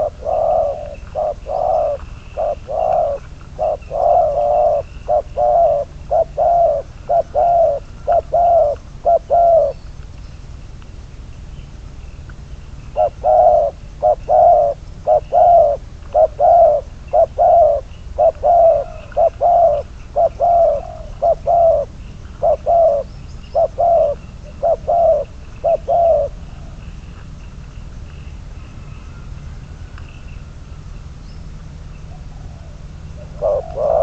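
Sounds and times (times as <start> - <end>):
dove cooing: 0.0 - 9.8, 12.9 - 27.2, 32.0 - 34.0.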